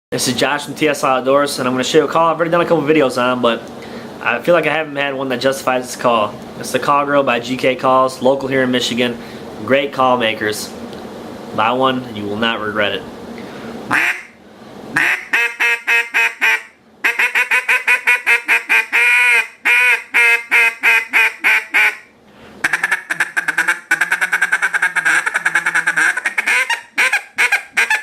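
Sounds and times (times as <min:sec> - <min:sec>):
duck call quacks: 0:13.9 - 0:14.4, 0:15.0 - 0:28.0.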